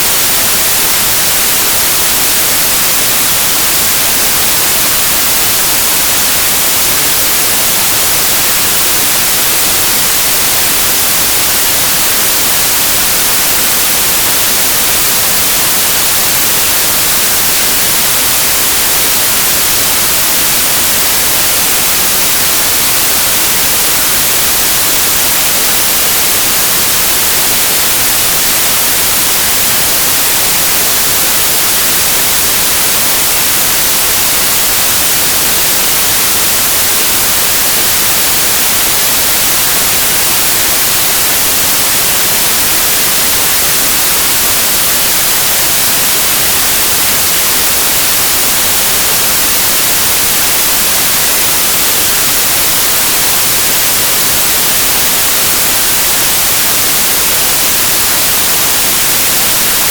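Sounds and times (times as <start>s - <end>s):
white noise hiss: 0.0s - 59.9s.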